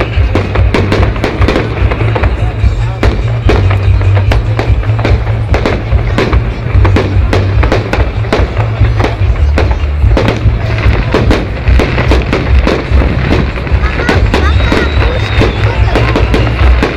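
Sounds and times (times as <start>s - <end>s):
fireworks bangs and bursts: 0.0s - 16.9s
loud music with heavy bass: 0.0s - 16.9s.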